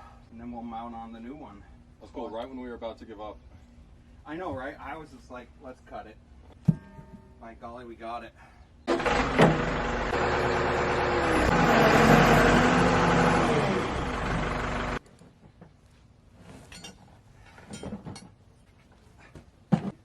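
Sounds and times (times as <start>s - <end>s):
vehicle engine running: 8.9s - 15.0s.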